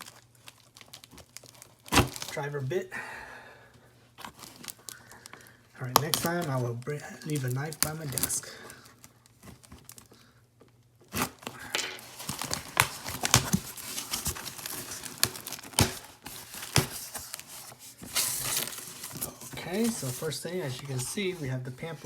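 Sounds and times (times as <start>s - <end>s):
cardboard tearing: 0.0s - 2.4s, 5.8s - 8.4s, 11.0s - 22.0s
packing crinkling: 0.0s - 2.4s, 4.2s - 22.0s.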